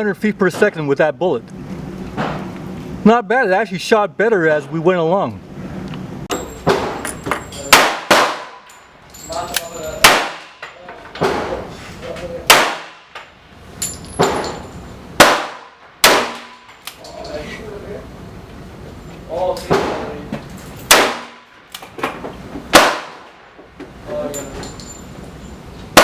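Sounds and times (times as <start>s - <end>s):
gunshots echoing: 7.7s - 8.7s, 10.0s - 10.6s, 12.4s - 13.2s, 15.2s - 16.7s, 20.9s - 21.5s, 22.7s - 23.4s.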